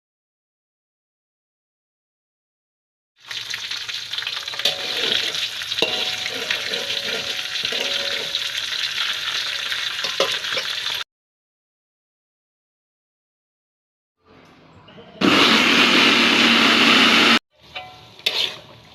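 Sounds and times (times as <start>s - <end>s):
food sizzling in oil: 3.2s - 11.0s, 15.2s - 18.9s.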